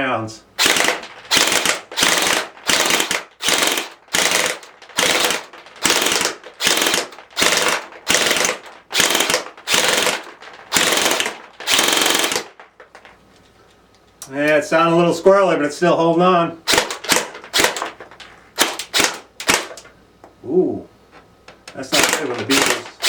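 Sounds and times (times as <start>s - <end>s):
airsoft gun full-auto bursts: 0.6s - 12.6s, 16.6s - 18.0s, 18.6s - 19.8s, 21.9s - 23.0s.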